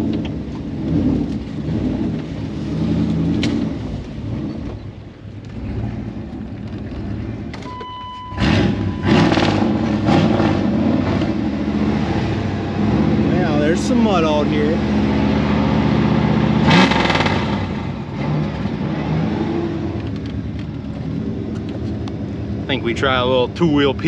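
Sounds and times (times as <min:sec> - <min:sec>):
truck engine revving: 0:00.0 - 0:07.6, 0:08.2 - 0:24.0
steady beep: 0:07.6 - 0:09.4.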